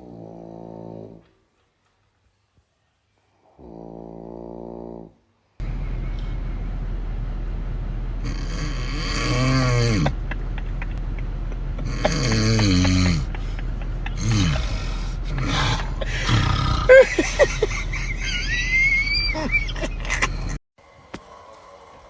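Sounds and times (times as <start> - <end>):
person snoring: 8.2 - 10.2, 11.8 - 18.0.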